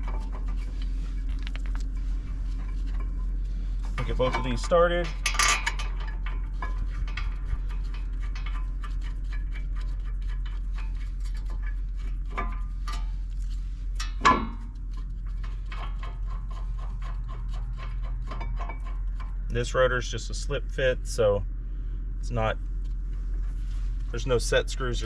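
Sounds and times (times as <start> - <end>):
metallic clank: 3.8 - 8.6, 14.0 - 19.4.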